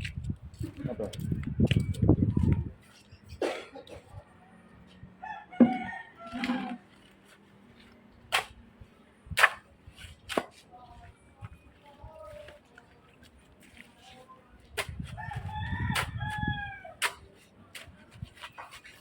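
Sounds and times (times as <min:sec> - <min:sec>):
rooster crowing: 0:05.2 - 0:06.8, 0:15.2 - 0:17.0.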